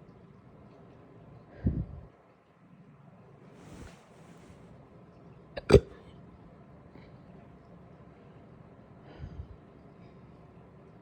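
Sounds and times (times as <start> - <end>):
soft breathy hiss: 3.5 - 4.7.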